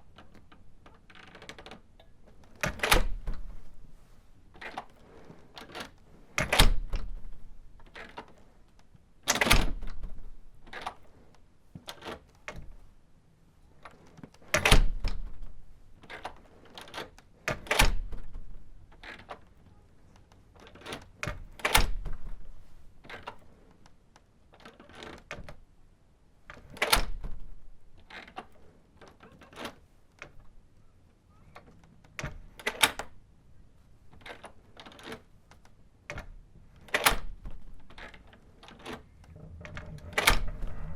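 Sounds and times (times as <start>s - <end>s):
small clicks and rattles: 0.0s - 3.6s, 13.7s - 25.7s, 34.1s - 40.9s
door shutting thud: 38.9s - 40.9s.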